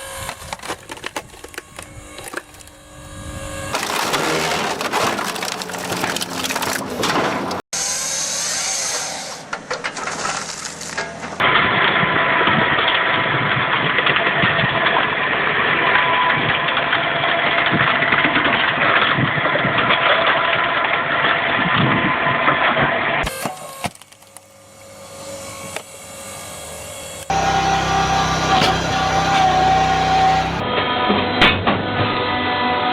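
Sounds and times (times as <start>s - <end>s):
machine engine running: 1.4s - 8.0s, 24.6s - 30.6s.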